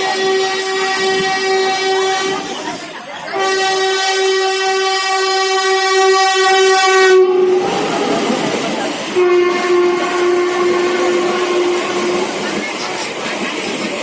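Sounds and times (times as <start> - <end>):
train horn blasts: 0.0 - 2.6, 3.3 - 12.6
rumble of running train: 0.0 - 14.0.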